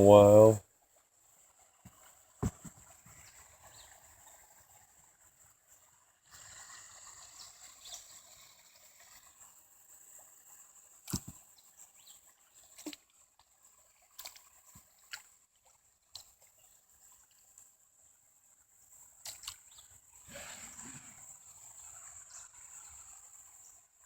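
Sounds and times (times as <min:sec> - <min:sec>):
paddle dipping and dripping: 0:06.3 - 0:17.5.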